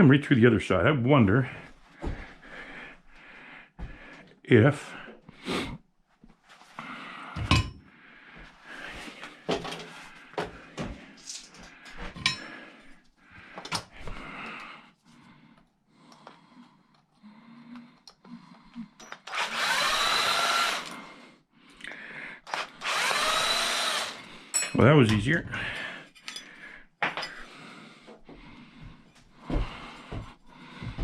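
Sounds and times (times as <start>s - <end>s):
metal parts knocking and clattering: 11.2s - 12.4s
power drill running: 19.2s - 21.0s, 22.5s - 24.3s.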